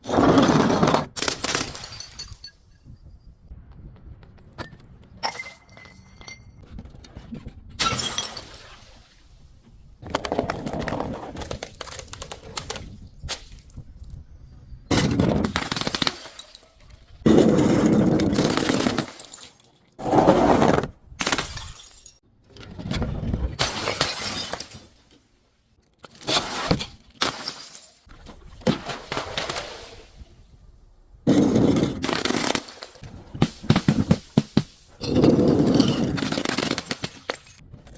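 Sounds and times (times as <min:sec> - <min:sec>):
glass bottles breaking and crushing: 0:01.2 - 0:03.0, 0:05.2 - 0:06.6, 0:07.8 - 0:08.7, 0:14.9 - 0:17.0, 0:18.2 - 0:19.9, 0:21.2 - 0:22.2, 0:23.6 - 0:25.0, 0:26.2 - 0:28.1, 0:31.3 - 0:37.6.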